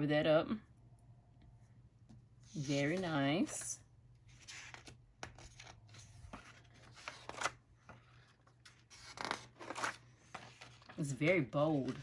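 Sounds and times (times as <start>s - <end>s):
paper pages rustling: 2.5s - 12.0s.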